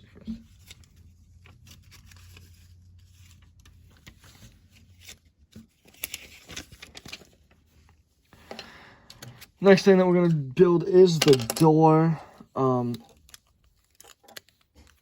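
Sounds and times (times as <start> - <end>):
plastic bricks clicking: 11.2 - 11.7.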